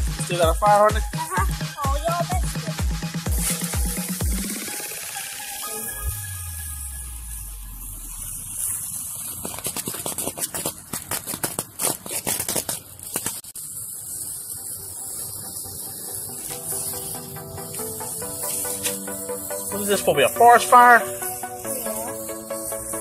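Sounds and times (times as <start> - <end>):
firework hissing: 0.0 - 23.0
firework crackling pops: 3.2 - 5.2, 7.3 - 23.0.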